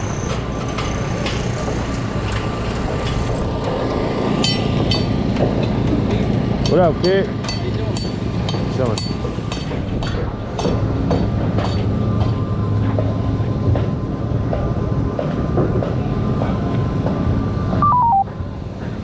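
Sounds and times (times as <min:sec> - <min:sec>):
heavy machinery rumbling: 0:00.0 - 0:06.8
short descending tone: 0:17.8 - 0:18.3.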